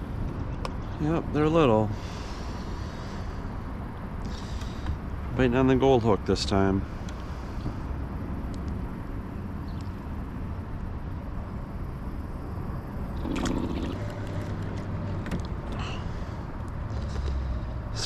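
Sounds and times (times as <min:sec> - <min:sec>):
low outdoor rumble: 0:00.0 - 0:18.0.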